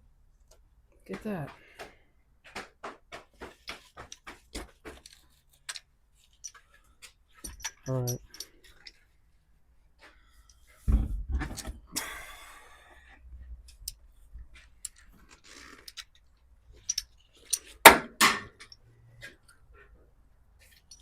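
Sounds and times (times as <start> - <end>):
heavy thuds of metal parts: 10.8 - 11.9, 17.8 - 18.8.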